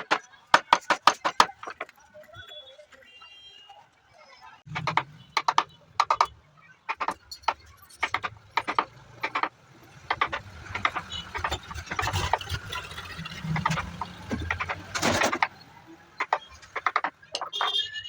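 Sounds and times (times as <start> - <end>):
sharp knocks on wood: 10.1 - 12.0, 16.2 - 17.7.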